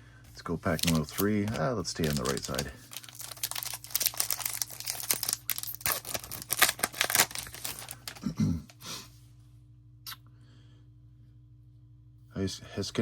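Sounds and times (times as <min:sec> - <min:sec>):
wrapper tearing and crinkling: 0:00.7 - 0:08.4.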